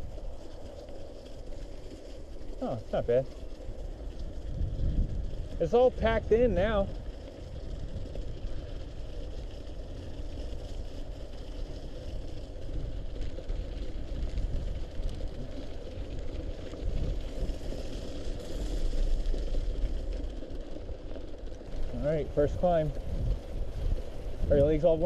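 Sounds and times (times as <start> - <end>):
bike tyres rolling over snow: 0.0 - 25.0
heavy low rumble: 12.3 - 25.0.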